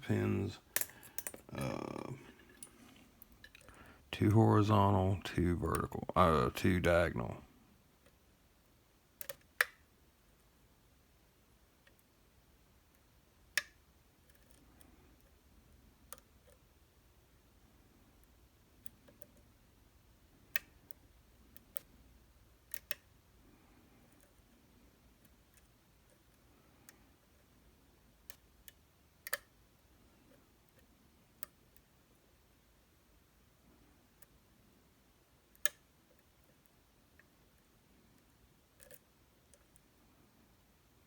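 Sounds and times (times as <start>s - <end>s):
lock-picking tools clicking: 0.8s - 1.5s.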